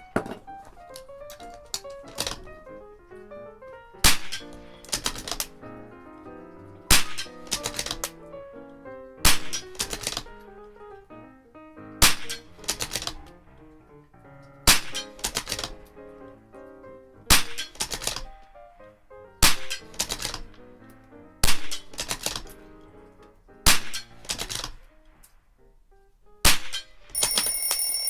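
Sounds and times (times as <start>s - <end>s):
rifle shots cracking: 4.0s - 5.5s, 6.9s - 8.1s, 9.2s - 10.3s, 12.0s - 13.2s, 14.7s - 15.8s, 17.3s - 18.3s, 19.4s - 20.5s, 21.4s - 22.5s, 23.6s - 24.8s, 26.4s - 27.1s.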